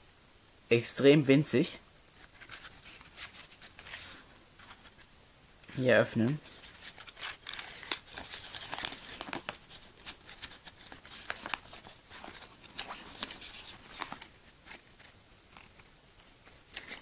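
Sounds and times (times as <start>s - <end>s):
packaging crinkling and tearing: 6.2s - 17.0s.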